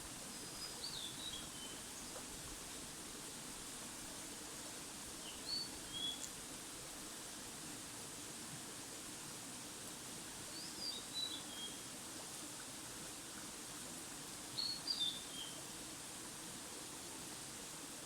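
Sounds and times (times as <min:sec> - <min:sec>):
steady outdoor hiss: 0:00.0 - 0:18.0
songbird singing: 0:00.5 - 0:01.8.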